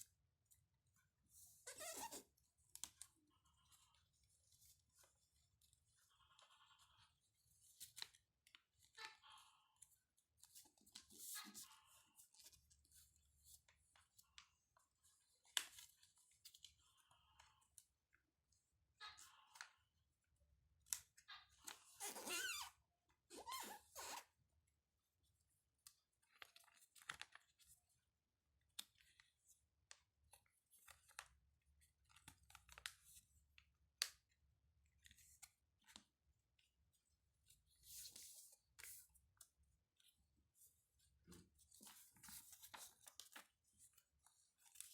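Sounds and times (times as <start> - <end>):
paper rustling: 41.4 - 44.9.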